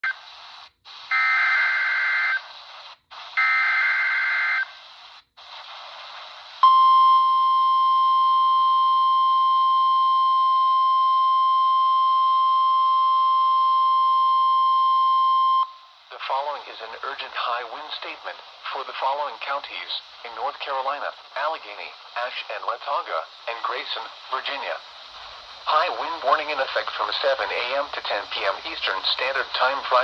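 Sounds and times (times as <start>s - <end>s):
radio hiss: 0.0s - 6.8s, 15.4s - 30.0s.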